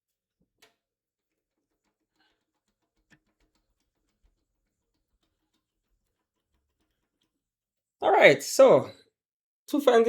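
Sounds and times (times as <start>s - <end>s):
faint clicks and taps: 0.4s - 7.5s.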